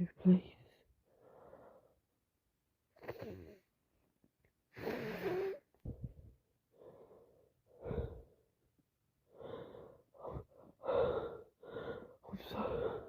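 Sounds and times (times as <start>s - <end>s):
gasping wheezy breaths: 6.7s - 8.5s, 9.3s - 13.0s.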